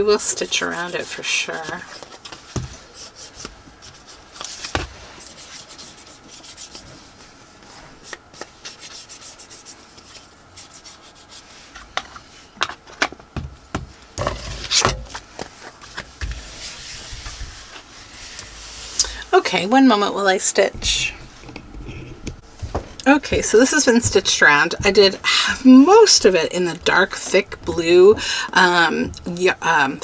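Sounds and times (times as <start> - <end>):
card scraping on a work surface: 14.2 - 15.2.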